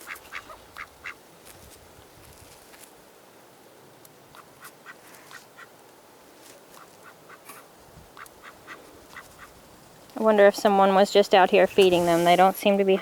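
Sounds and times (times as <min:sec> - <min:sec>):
ducks quacking softly: 0:00.0 - 0:01.2, 0:06.8 - 0:09.6
quiet hiss: 0:00.0 - 0:13.0.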